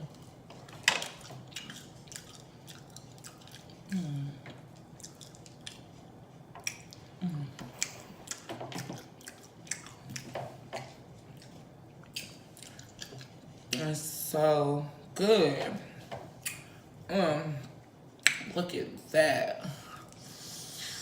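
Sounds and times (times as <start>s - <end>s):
chewing and lip smacking: 0.0s - 13.8s, 16.4s - 16.7s.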